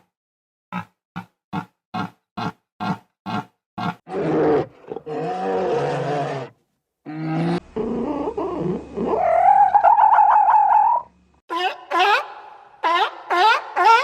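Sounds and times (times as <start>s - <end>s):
loud pitched animal calls: 7.1s - 14.0s.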